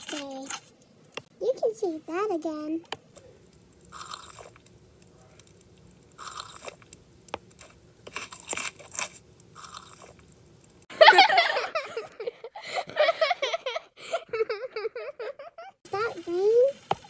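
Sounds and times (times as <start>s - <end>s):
person chewing crunchy snack: 3.9s - 4.7s, 6.1s - 10.3s.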